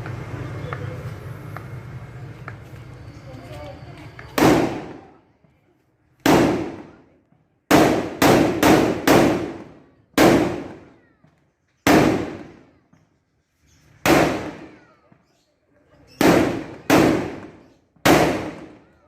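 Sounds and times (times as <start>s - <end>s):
firecrackers exploding with echo: 4.3s - 5.2s, 6.2s - 11.0s, 11.8s - 12.8s, 13.9s - 15.1s, 16.1s - 19.0s.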